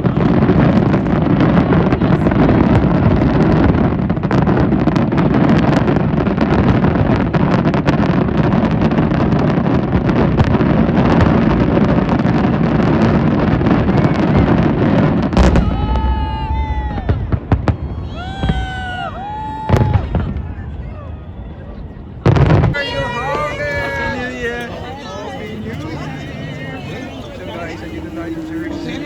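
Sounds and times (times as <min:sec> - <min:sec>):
fireworks bangs and crackles: 0:00.0 - 0:29.0.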